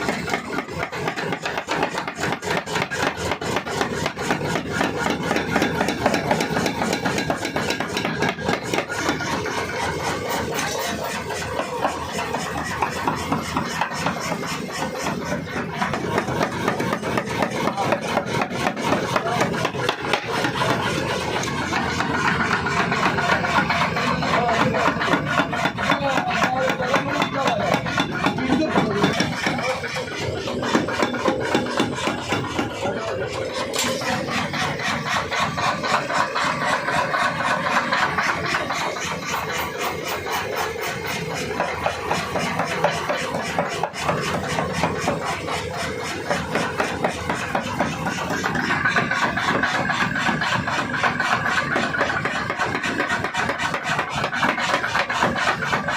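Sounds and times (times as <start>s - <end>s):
power hammer pounding metal: 0.0s - 55.9s.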